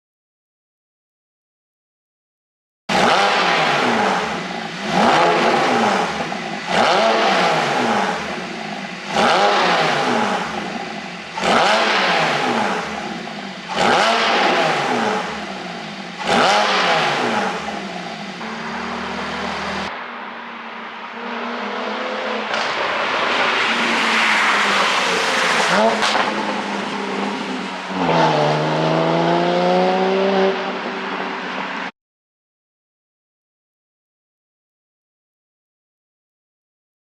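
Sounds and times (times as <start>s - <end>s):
car engine revving: 2.9s - 31.9s
exhaust popping and crackling: 18.2s - 20.2s, 20.9s - 24.0s.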